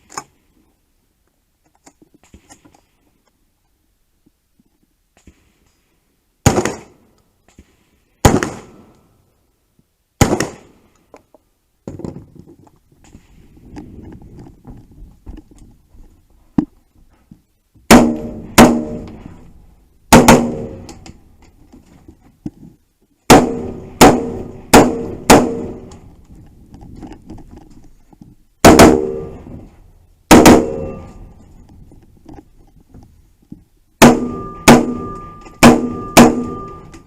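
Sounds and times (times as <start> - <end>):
gunshots with ringing tail: 17.9 - 19.4, 20.1 - 21.0, 23.3 - 26.0, 28.6 - 29.6, 30.3 - 31.4, 34.0 - 37.0.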